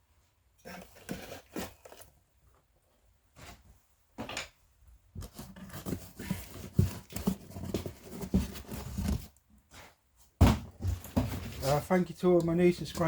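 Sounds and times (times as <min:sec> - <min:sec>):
packaging rustling: 0:00.7 - 0:02.1.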